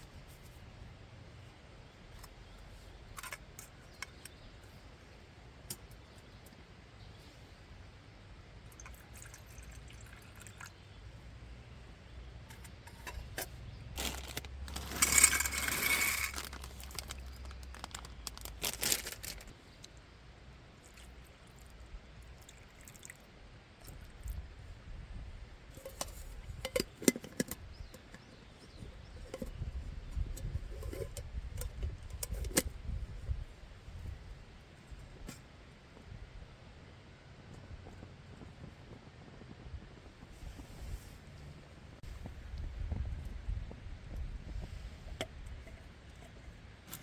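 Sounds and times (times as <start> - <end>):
objects clinking and knocking: 12.6 - 19.5.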